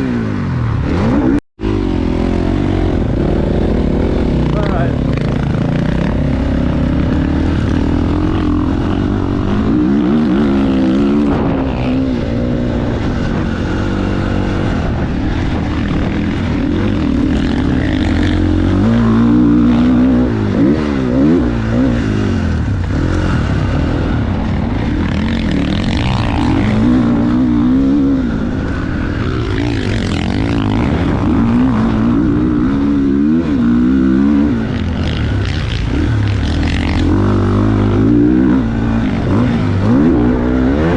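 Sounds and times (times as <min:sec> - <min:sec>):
motocross bike engine revving: 0:00.0 - 0:40.9
wind rumble on microphone: 0:00.0 - 0:40.9.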